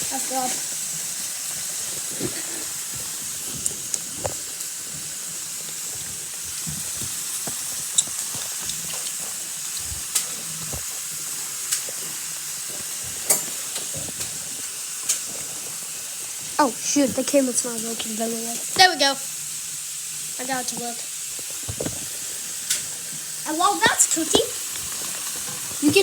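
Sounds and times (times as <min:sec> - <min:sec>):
meat sizzling in a pan: 0:00.0 - 0:26.0
sharp pops: 0:20.7 - 0:26.0.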